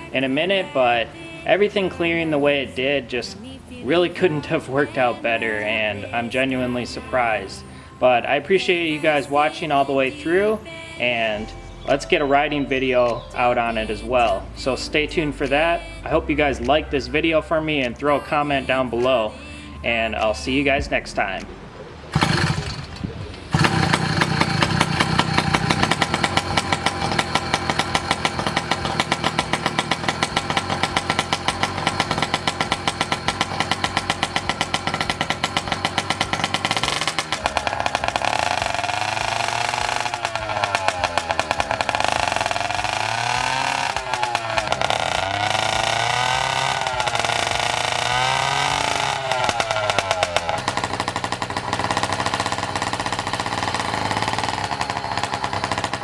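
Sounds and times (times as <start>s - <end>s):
small engine revving: 21.2s - 56.0s.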